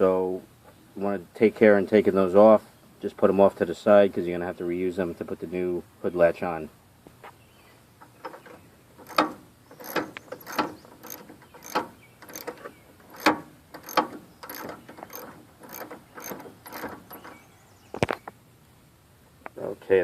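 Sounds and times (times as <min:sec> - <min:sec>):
ratchet wrench clicking: 0:09.0 - 0:17.2.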